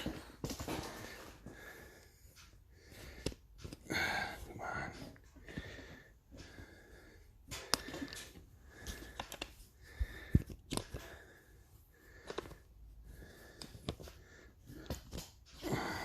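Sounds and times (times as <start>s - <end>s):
objects being handled and set down: 0.0s - 1.6s.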